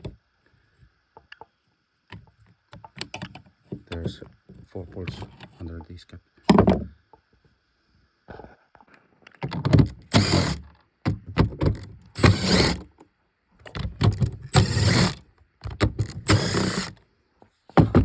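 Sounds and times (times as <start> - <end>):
pliers scraping plastic: 16.0 - 17.0.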